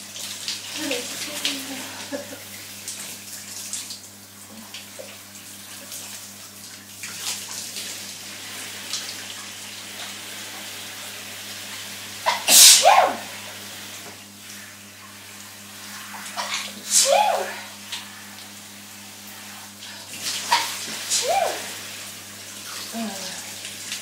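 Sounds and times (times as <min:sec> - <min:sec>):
shower water running: 0:00.0 - 0:24.0
woman sneezing: 0:12.3 - 0:13.3, 0:16.4 - 0:17.7, 0:21.1 - 0:21.7.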